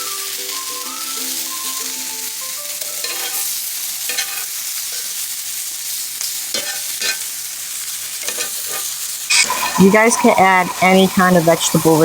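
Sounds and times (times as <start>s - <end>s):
vegetables sizzling in a skillet: 0.0s - 12.0s
utensil scraping a pan: 3.0s - 5.2s, 6.5s - 7.3s, 8.2s - 12.0s.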